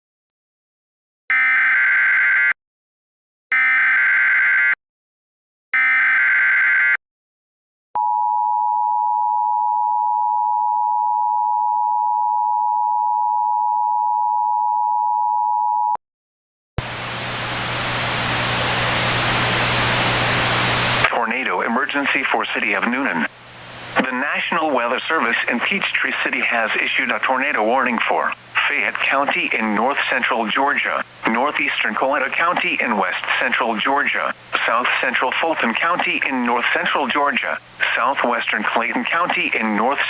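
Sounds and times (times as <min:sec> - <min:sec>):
static hiss: 0:16.8 - 0:21.1.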